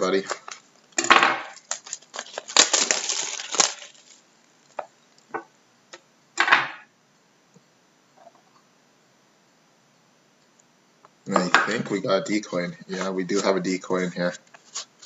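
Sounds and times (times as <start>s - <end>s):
cardboard and wrapper tearing: 1.5s - 4.2s.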